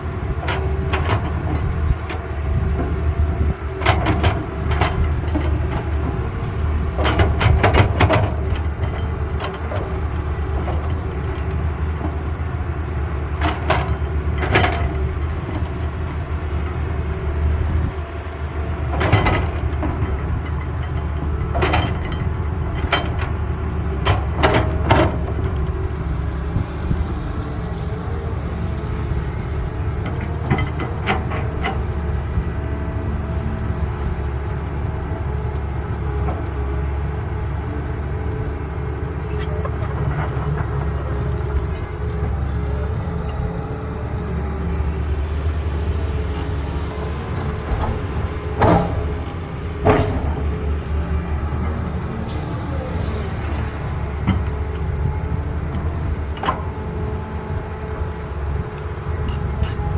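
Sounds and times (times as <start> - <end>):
diesel excavator engine running: 0.0 - 59.9
metallic clanks from excavator bucket: 18.9 - 25.8, 39.0 - 43.6, 46.4 - 53.4, 59.1 - 59.9.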